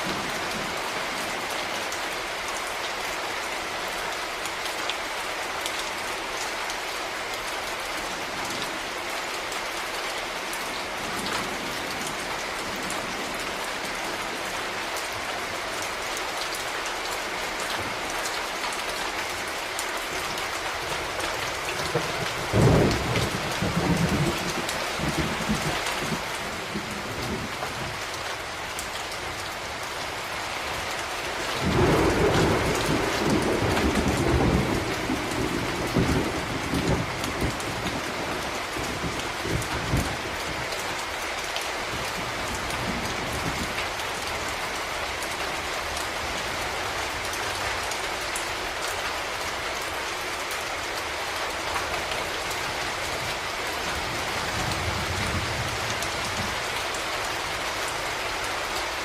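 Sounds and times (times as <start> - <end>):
steady rain: 0.0 - 59.0
thunder rumbling: 31.6 - 40.3.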